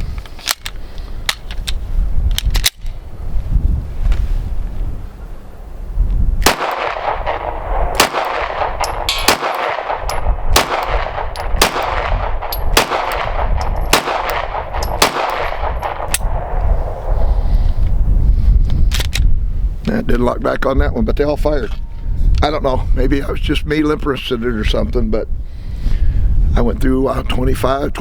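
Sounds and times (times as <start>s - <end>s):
pistol shots: 6.4s - 17.2s.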